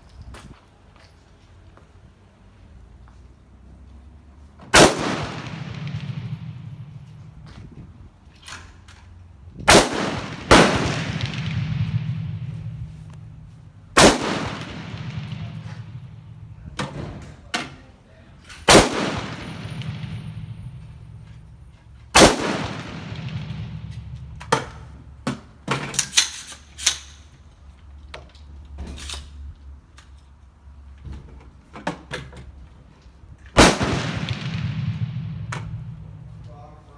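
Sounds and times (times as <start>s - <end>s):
rifle shots with echo: 4.7s - 7.4s, 9.7s - 17.0s, 18.6s - 25.0s, 33.6s - 36.4s.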